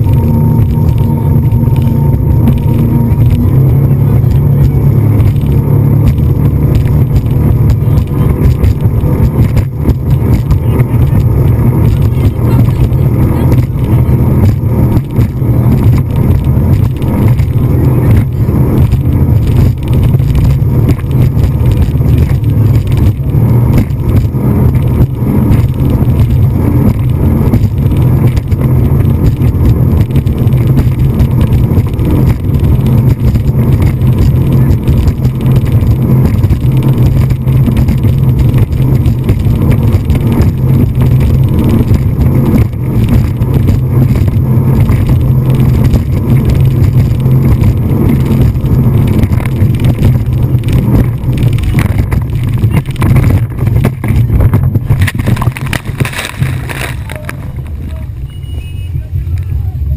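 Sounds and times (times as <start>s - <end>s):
wind buffeting microphone: 0.0s - 58.2s
speedboat engine rumbling: 0.0s - 59.9s.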